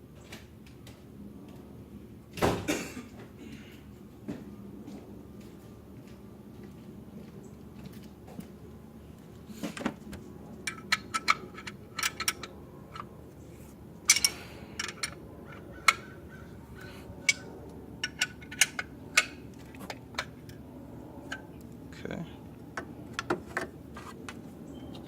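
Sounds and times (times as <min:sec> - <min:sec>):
metal tools clinking on bolts: 0:10.6 - 0:13.1, 0:14.0 - 0:16.1, 0:16.8 - 0:20.6.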